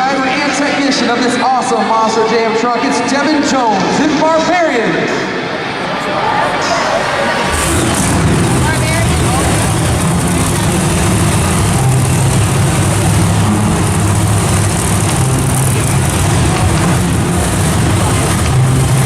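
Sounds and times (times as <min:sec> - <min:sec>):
monster truck engine running: 0:07.4 - 0:19.0.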